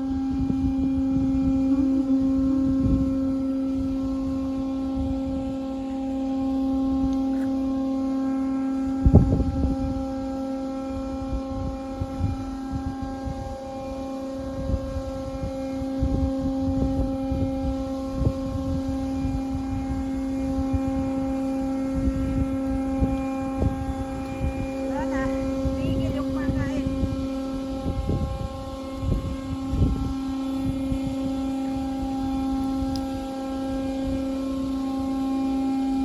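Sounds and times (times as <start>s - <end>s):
motor droning hum: 0.0s - 36.0s.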